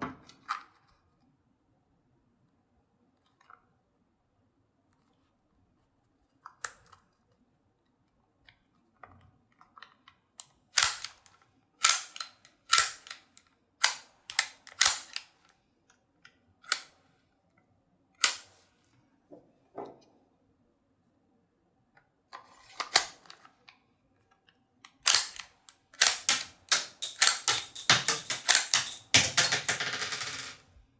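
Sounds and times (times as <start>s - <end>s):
toy pistol mechanical clicks: 10.8s - 15.4s, 24.9s - 29.5s.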